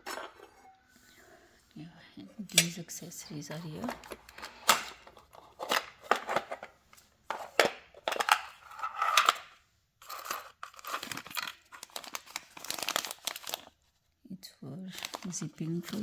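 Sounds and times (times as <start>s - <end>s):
plastic packaging crinkling: 7.5s - 14.0s, 14.9s - 16.0s.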